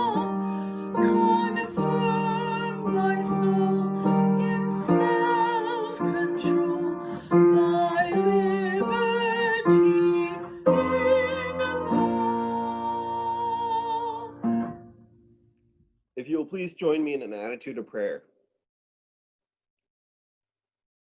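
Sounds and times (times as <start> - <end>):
person singing a hymn: 0.0 - 14.8.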